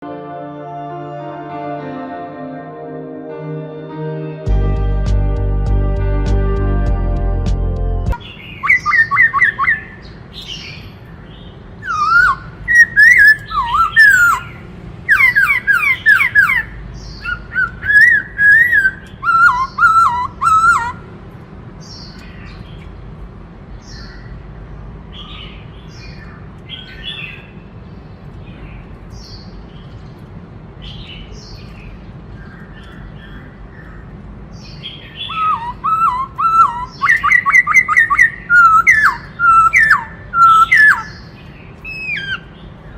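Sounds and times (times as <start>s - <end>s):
bird singing whistled phrases: 8.4s - 10.0s, 11.8s - 14.5s, 15.1s - 21.0s, 35.1s - 41.2s, 41.8s - 42.5s
soft bird calls: 25.2s - 42.9s.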